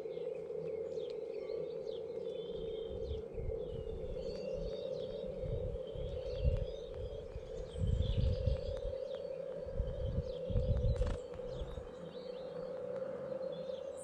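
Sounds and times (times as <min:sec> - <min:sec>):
small birds chirping: 0:00.0 - 0:14.0
steady low hum: 0:02.4 - 0:14.0
uneven low rumble: 0:09.6 - 0:13.1.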